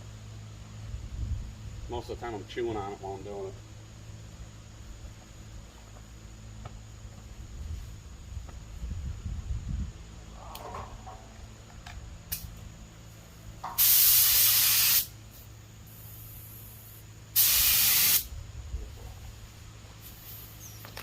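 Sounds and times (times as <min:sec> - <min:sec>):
spray gun hissing: 0:13.6 - 0:18.3, 0:19.4 - 0:20.8.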